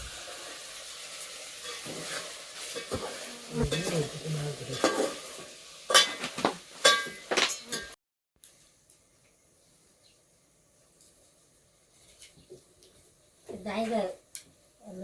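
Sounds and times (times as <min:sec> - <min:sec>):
food sizzling in pan: 0:00.0 - 0:09.9
metal clanks against pan: 0:04.7 - 0:05.3, 0:05.9 - 0:08.0.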